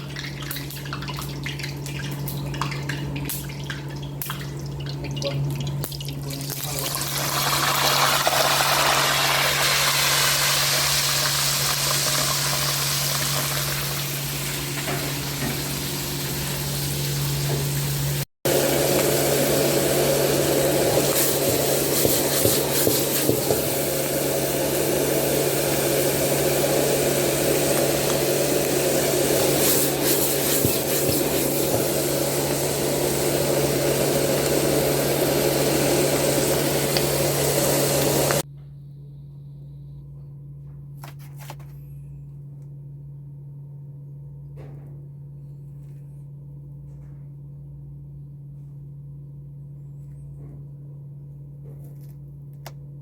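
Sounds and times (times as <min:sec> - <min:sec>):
water running from a tap: 0:00.0 - 0:38.4
low steady hum: 0:38.2 - 0:53.0.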